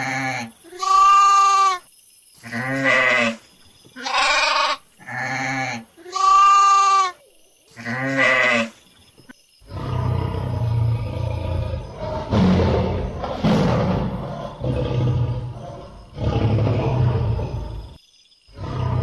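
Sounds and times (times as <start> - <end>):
goats bleating: 0.0 - 1.8, 4.0 - 7.2.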